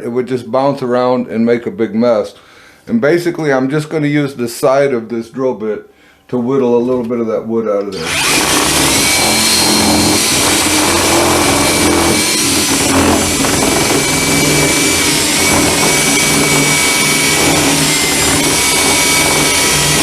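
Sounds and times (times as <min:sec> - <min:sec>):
electric drill boring wood: 0:07.9 - 0:20.0.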